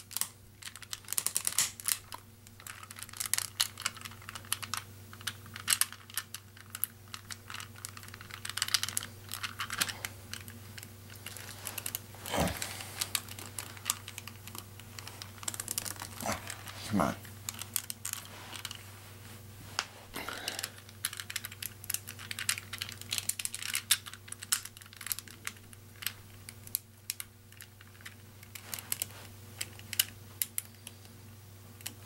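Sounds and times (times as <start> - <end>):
plastic puzzle cube clicking: 0.1 - 10.5, 21.0 - 30.8.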